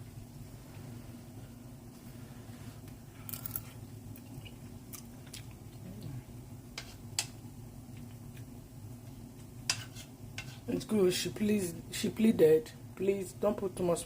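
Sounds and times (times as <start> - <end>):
steady low hum: 0.0 - 14.0
person chewing food: 3.3 - 5.9.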